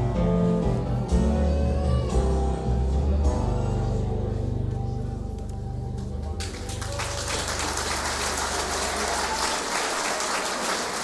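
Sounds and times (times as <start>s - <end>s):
audience applause: 6.4s - 11.0s.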